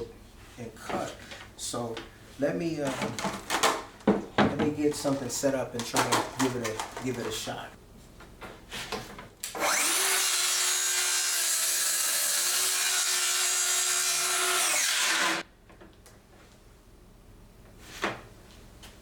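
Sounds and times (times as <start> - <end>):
circular saw cutting a board: 9.6 - 15.4.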